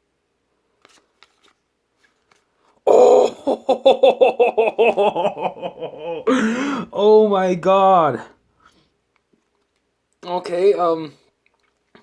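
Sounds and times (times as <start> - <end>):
man crying out excitedly: 2.9 - 7.4.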